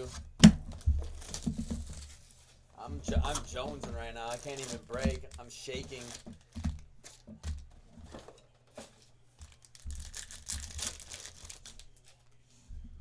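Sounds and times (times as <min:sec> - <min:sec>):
wrappers crinkling: 0:00.0 - 0:12.5
packaging tearing: 0:02.9 - 0:07.7, 0:09.4 - 0:12.3.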